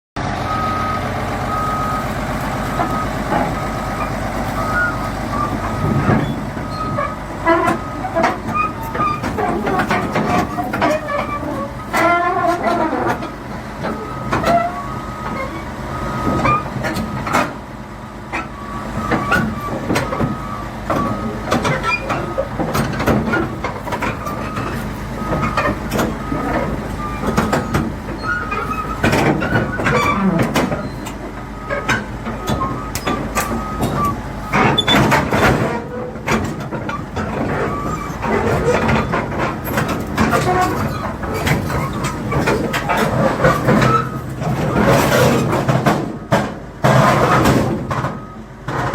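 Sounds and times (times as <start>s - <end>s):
bulldozer diesel engine running: 0.2s - 48.9s
backup alarm beeping: 0.4s - 3.8s, 30.8s - 35.0s
steel tracks clanking and squealing: 0.4s - 48.9s.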